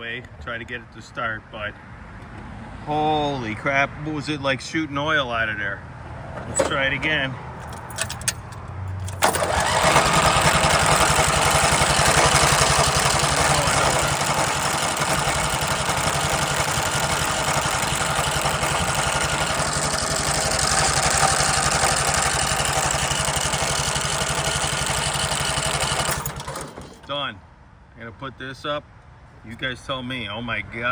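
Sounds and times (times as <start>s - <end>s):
lawn tractor engine running: 6.3s - 27.2s.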